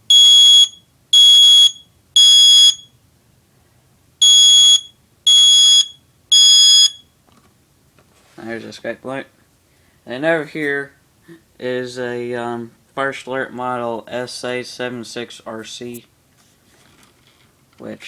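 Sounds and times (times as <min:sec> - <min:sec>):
smoke alarm beeps: 0:00.1 - 0:03.0, 0:04.2 - 0:07.2.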